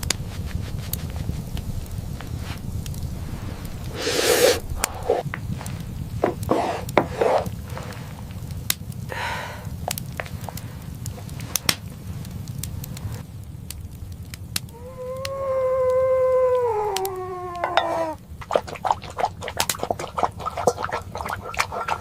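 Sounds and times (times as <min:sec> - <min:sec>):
low rumble: 0:00.0 - 0:04.0, 0:04.6 - 0:18.4
wolf howl: 0:14.7 - 0:18.2.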